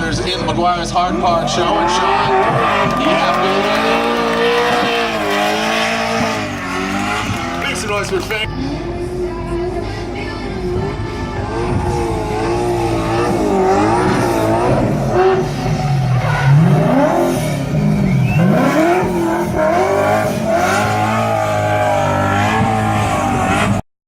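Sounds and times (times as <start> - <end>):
car engine revving hard: 0.0 - 9.0, 11.5 - 23.8.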